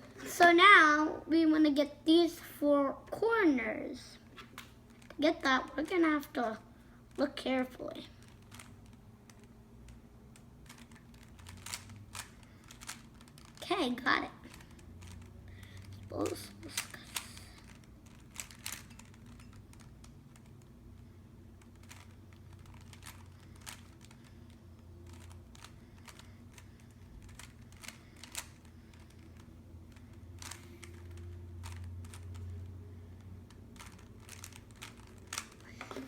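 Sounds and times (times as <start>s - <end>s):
low steady hum: 0.0s - 36.0s
plastic puzzle cube clicks: 8.2s - 13.6s, 16.8s - 20.6s, 21.7s - 24.3s, 25.1s - 32.5s.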